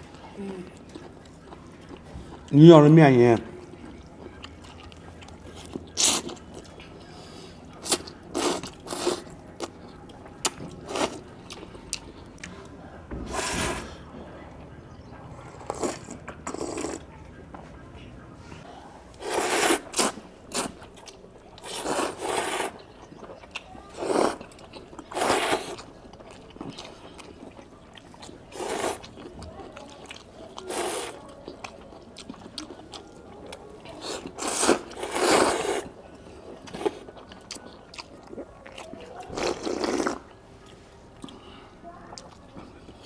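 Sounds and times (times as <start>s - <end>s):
noodles being slurped: 7.8s - 9.7s, 15.5s - 17.0s, 19.2s - 21.0s, 21.6s - 22.9s, 23.9s - 26.0s, 28.1s - 29.3s, 29.9s - 31.6s, 33.8s - 36.0s, 39.3s - 40.3s.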